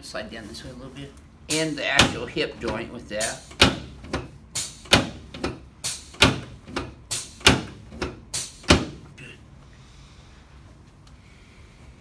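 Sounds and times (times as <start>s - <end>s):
sharp knocks: 3.2s - 9.1s.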